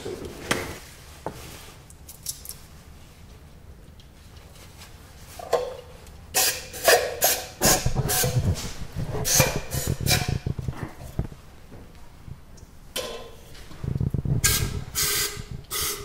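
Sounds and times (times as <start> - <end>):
parts knocking and rubbing: 6.4 - 11.3
spray cleaner hissing: 14.4 - 16.0.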